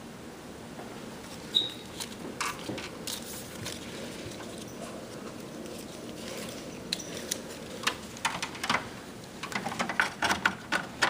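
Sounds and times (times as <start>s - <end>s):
steady low background hum: 0.0s - 11.0s
plastic and metal parts clicking: 7.0s - 11.0s.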